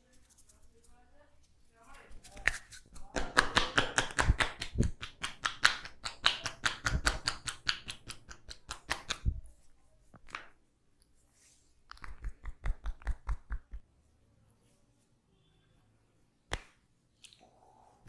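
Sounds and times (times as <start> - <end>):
hands tapping head in massage: 3.2 - 9.3, 11.9 - 13.8.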